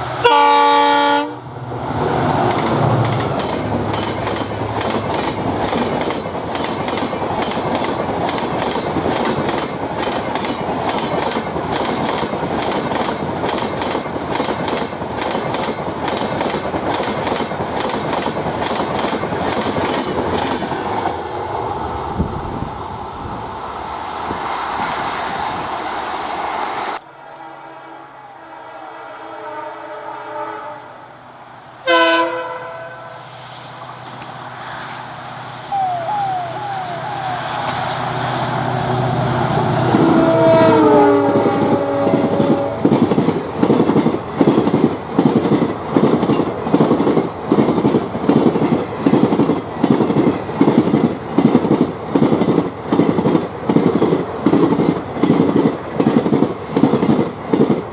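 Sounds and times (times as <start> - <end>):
diesel locomotive engine: 0.0 - 57.9
locomotive horn blasts: 0.1 - 1.4, 27.1 - 31.2, 31.8 - 33.2, 35.8 - 42.9.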